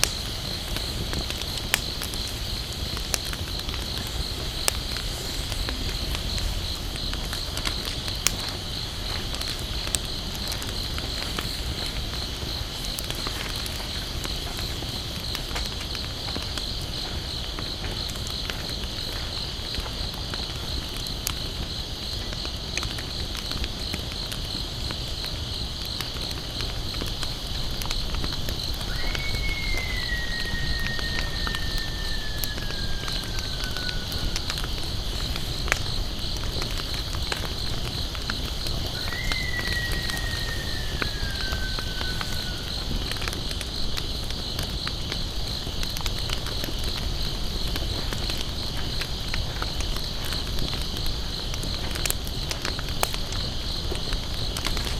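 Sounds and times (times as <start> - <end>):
campfire crackling and popping: 0.0 - 54.9
high insect chorus: 0.0 - 54.9
falling whistled call: 28.8 - 34.5, 39.0 - 42.8.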